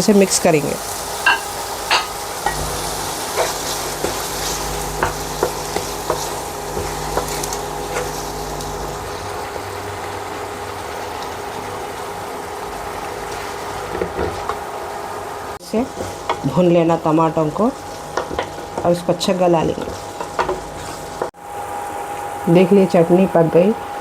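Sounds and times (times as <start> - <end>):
food sizzling in hot oil: 0.0 - 24.0
spoon knocking against pan: 1.2 - 2.6.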